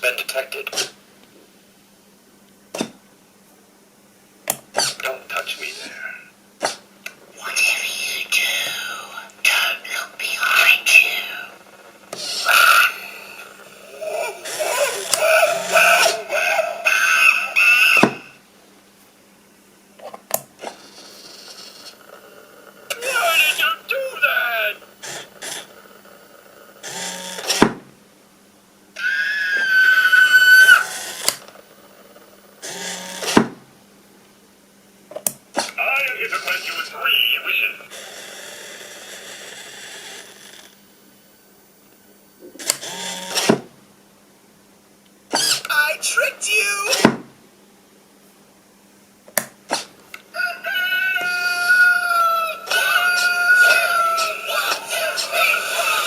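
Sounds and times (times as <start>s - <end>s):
servo motors whirring: 14.0s - 16.5s, 45.3s - 45.7s
rooster crowing through speaker: 50.3s - 56.0s.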